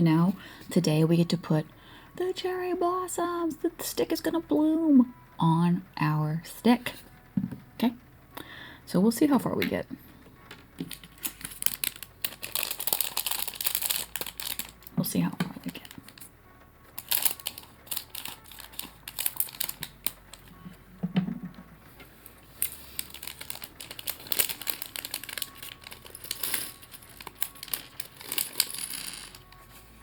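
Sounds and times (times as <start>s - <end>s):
plastic bag crinkling: 10.8s - 16.3s, 17.0s - 20.6s, 22.2s - 29.9s
plastic pieces clattering: 10.8s - 16.3s, 17.0s - 20.6s, 22.2s - 29.7s.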